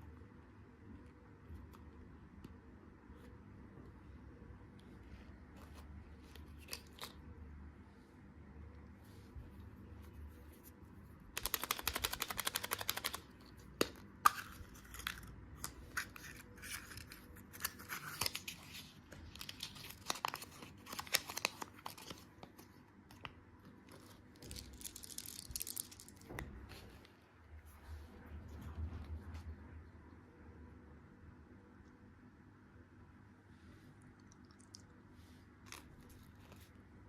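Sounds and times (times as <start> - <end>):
candy wrapper crinkling: 11.4 - 22.6, 23.9 - 26.3.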